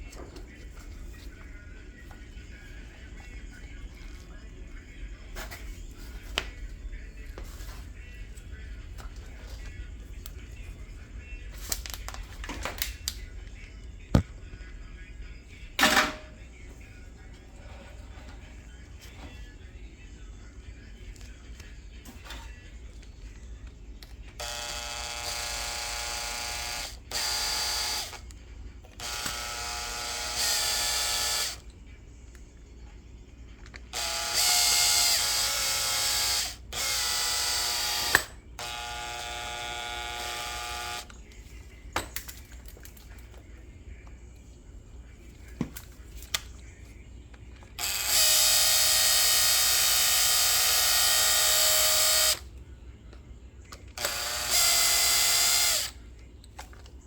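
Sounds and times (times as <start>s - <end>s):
cordless power driver whirring: 24.4s - 28.2s, 28.9s - 31.6s, 33.9s - 41.1s, 47.8s - 52.4s, 53.9s - 56.0s.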